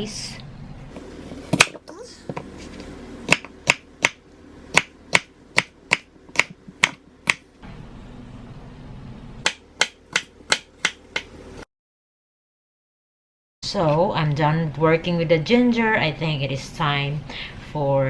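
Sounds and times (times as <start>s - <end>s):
knife chopping on cutting board: 1.5s - 2.7s, 3.3s - 7.5s, 9.5s - 11.4s.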